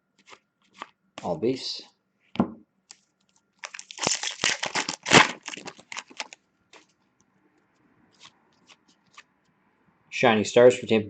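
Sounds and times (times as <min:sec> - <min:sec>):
trading cards clicking and rustling: 0:03.6 - 0:06.9, 0:08.1 - 0:09.3.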